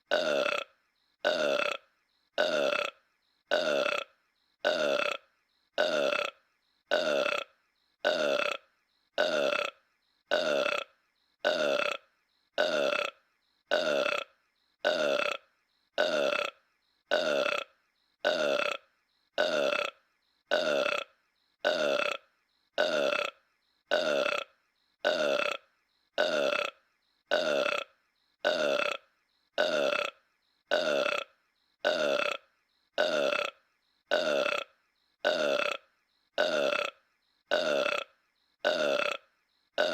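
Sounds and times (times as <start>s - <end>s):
cartoon burp: 0.0s - 39.9s.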